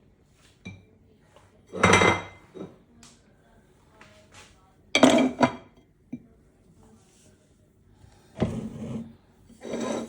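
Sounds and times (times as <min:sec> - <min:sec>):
knocking and scraping: 0:08.3 - 0:10.0.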